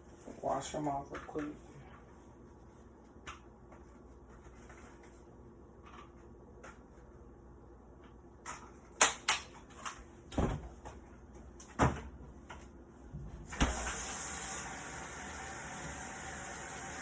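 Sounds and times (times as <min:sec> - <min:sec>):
kitchen knocks and clunks: 0:10.3 - 0:11.0, 0:11.6 - 0:12.2
water running into sink: 0:13.4 - 0:17.0.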